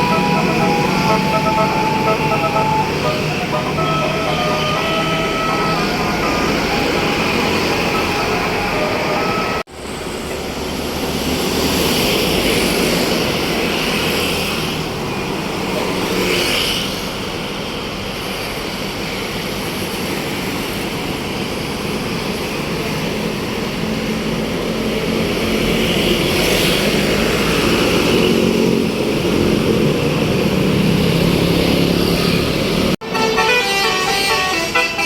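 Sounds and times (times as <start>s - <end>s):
multi-tone musical air horn: 0.0s - 9.6s, 33.0s - 35.0s
bus engine noise: 0.0s - 35.0s.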